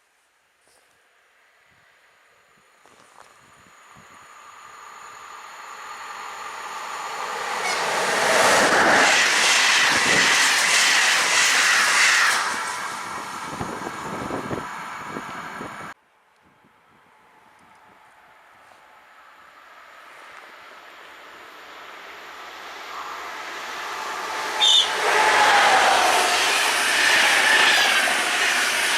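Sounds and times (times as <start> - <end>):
train passing at speed: 3.8 - 16.0, 19.3 - 28.9.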